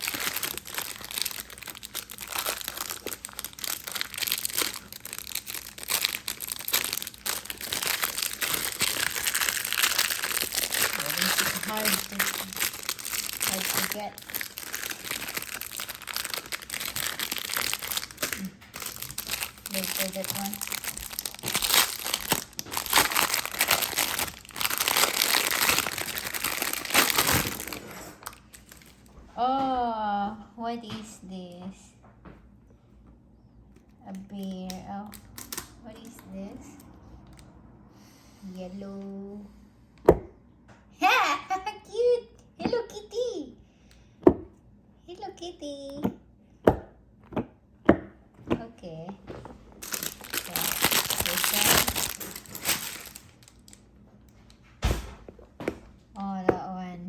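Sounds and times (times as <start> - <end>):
plastic packaging crinkling: 0.0 - 29.1, 34.4 - 36.2, 49.2 - 54.5.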